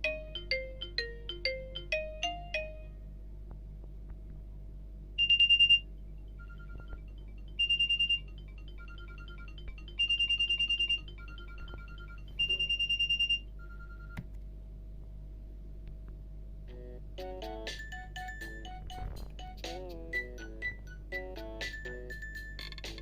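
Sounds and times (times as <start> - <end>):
phone ringtone beeps: 5.2 - 14.2, 17.7 - 23.0.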